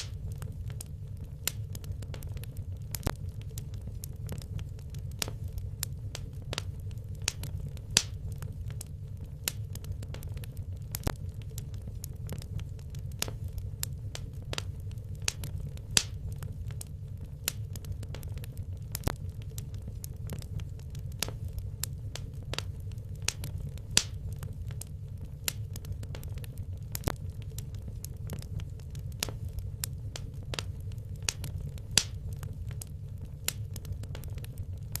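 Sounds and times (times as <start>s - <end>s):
low rumble of flames: 0.0s - 35.0s
wood fire crackling and popping: 0.0s - 35.0s.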